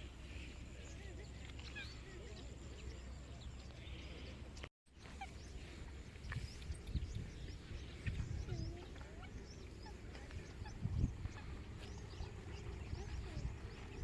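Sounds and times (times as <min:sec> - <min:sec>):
waterbirds chirping and squawking: 0:00.0 - 0:14.0.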